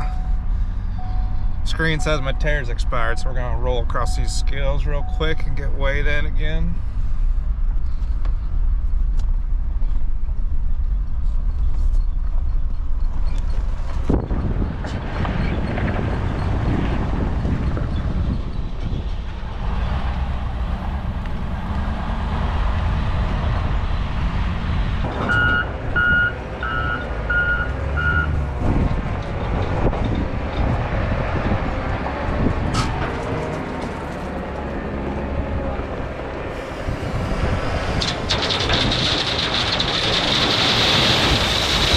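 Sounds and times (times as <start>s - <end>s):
backup alarm beeping: 0.0s - 6.0s, 25.3s - 28.4s
truck engine running: 0.0s - 14.2s, 19.1s - 41.9s.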